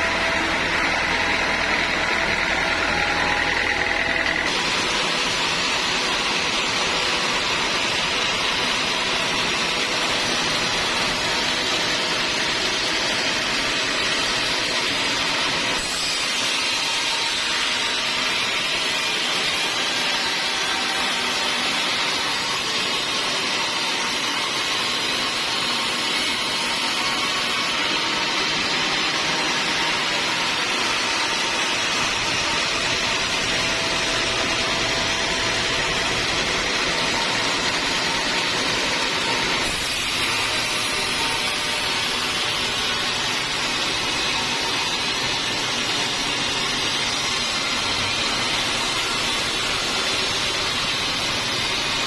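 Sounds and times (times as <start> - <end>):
circular saw whining: 0.0 - 52.0
saw blade cutting wood: 0.0 - 52.0.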